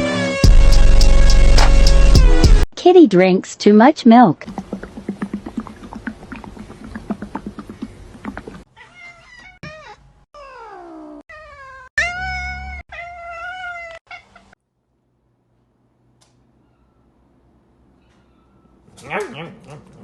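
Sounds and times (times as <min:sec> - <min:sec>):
cat meowing: 0:08.8 - 0:14.5.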